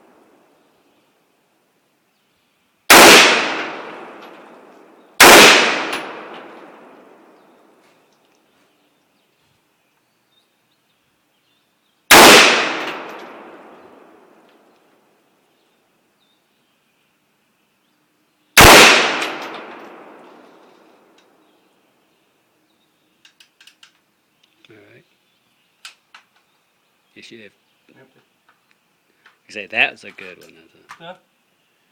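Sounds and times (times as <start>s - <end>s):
rifle shots echoing: 2.9s - 7.3s, 12.1s - 14.4s, 18.6s - 21.1s.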